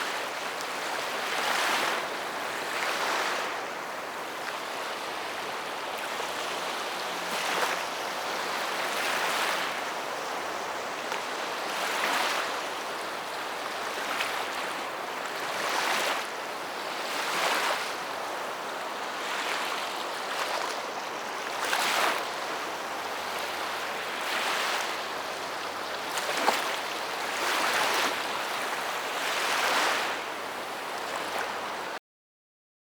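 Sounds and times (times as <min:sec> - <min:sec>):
sea waves breaking: 0:00.0 - 0:09.8, 0:21.6 - 0:31.9.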